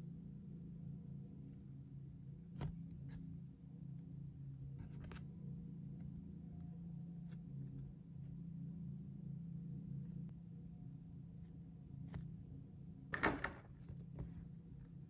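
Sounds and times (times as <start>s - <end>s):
low background hum: 0.0s - 15.0s
paper and cardboard handled: 13.8s - 14.5s.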